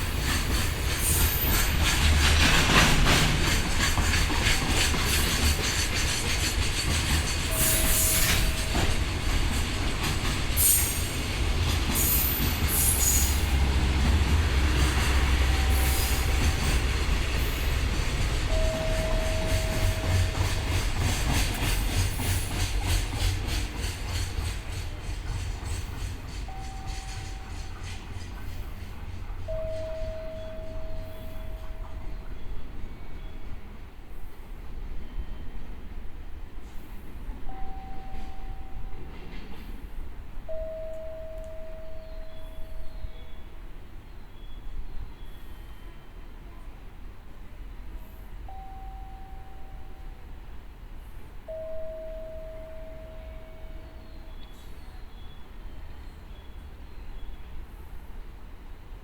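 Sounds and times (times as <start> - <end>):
train wheel clicks: 0.0 - 32.0
freight train rumble: 0.0 - 59.0
high wheel squeals: 7.4 - 9.1, 12.0 - 14.0, 14.6 - 17.8.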